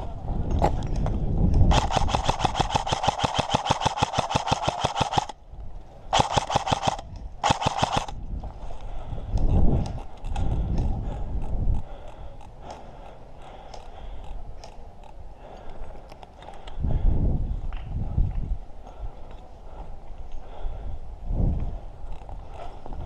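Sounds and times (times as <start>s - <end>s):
airsoft rifle firing bursts: 1.7s - 5.4s, 6.1s - 8.2s.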